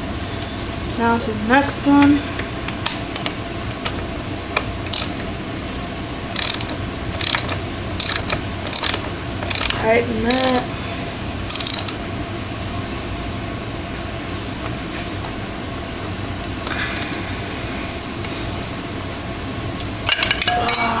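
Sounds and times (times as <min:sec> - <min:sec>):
ratchet wrench clicking: 0:04.9 - 0:05.1, 0:06.3 - 0:09.8, 0:11.5 - 0:12.0.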